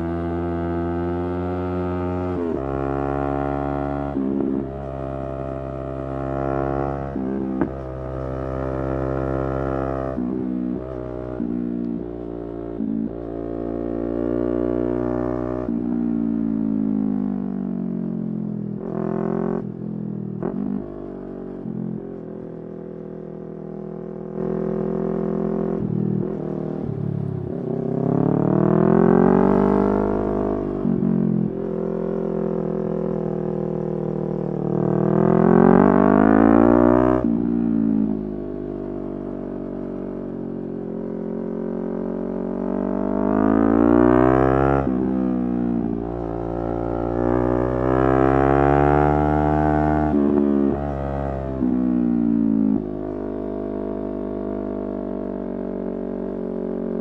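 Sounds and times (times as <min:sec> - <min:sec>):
motorcycle engine revving: 0:24.2 - 0:57.0.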